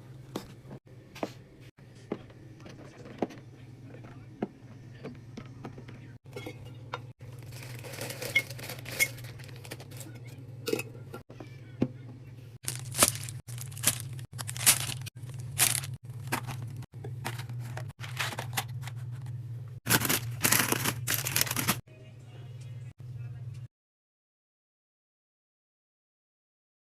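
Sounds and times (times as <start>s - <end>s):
plastic packaging crinkling: 7.3s - 10.0s, 12.6s - 19.2s, 19.9s - 21.8s.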